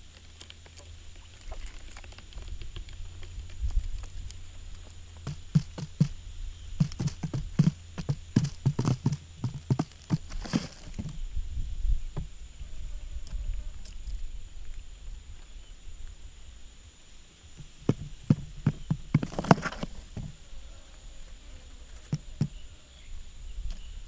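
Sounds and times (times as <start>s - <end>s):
low steady hum: 0.0s - 24.0s
irregular knocks and taps: 5.2s - 6.2s, 6.8s - 11.2s, 17.6s - 20.3s.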